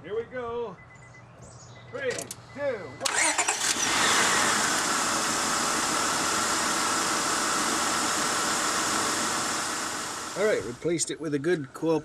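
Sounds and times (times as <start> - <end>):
car engine cranking and starting: 2.1 - 10.9
engine whine: 2.1 - 11.0.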